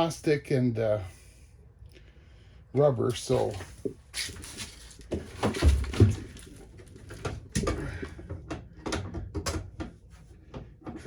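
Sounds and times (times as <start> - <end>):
heavy thumps: 3.1 - 8.0.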